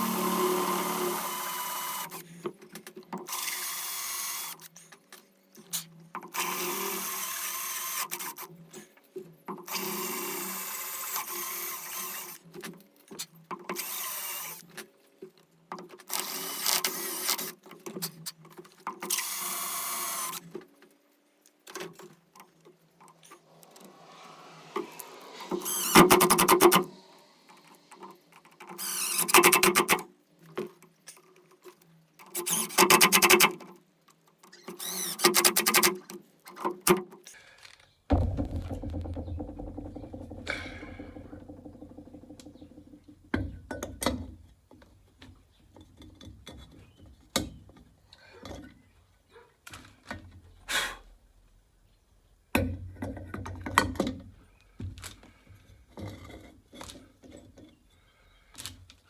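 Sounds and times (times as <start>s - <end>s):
power drill bursts: 0.0s - 2.2s, 23.6s - 28.0s, 28.7s - 30.0s, 34.8s - 35.9s
rapid clicking rattle: 38.1s - 43.1s.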